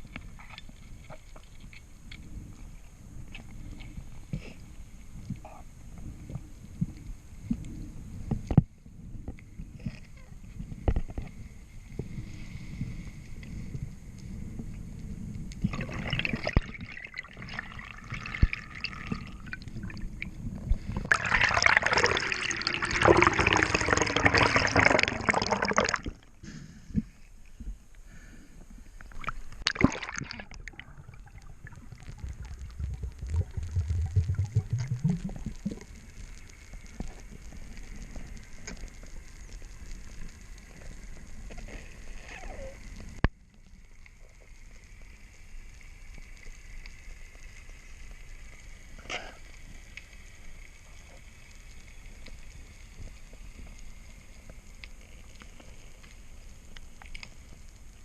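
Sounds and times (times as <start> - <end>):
water sloshing and splashing: 15.6 - 26.4, 29.1 - 35.9.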